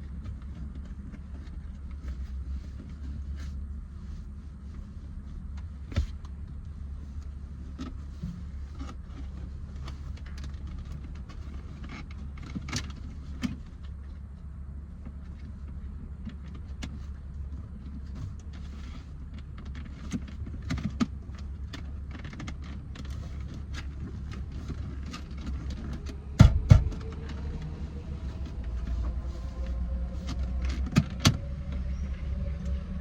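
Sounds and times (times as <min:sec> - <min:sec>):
steady low hum: 0:00.0 - 0:33.0
loud knocks: 0:26.4 - 0:27.1.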